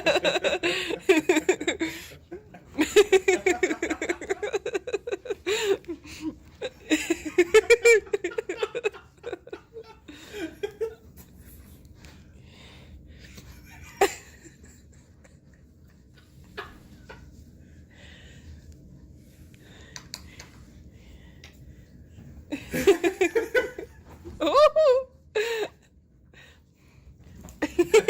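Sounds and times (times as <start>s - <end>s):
person laughing hard: 0.0s - 11.0s, 22.5s - 25.8s.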